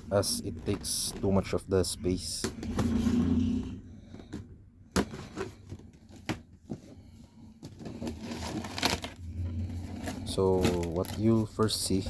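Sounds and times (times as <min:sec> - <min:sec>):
rustling of cardboard and paper: 0:04.1 - 0:12.0.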